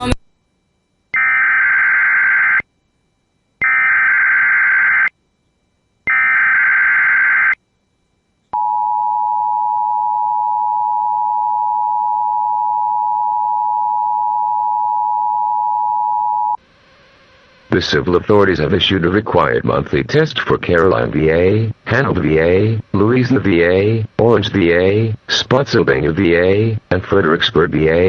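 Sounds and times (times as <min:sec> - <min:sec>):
warbling data bursts: 0:06.1 - 0:07.6.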